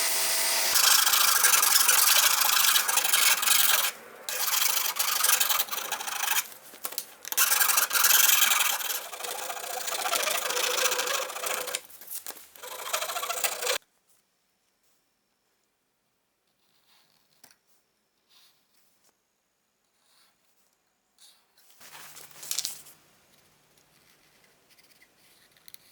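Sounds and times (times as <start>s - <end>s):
sanding wood: 0.0s - 6.5s, 7.4s - 11.8s, 12.6s - 13.8s.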